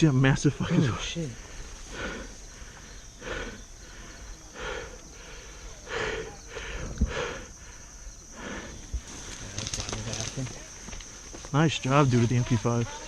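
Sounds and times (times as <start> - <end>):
insects droning: 0.0 - 13.0
heavy breathing: 0.8 - 9.8.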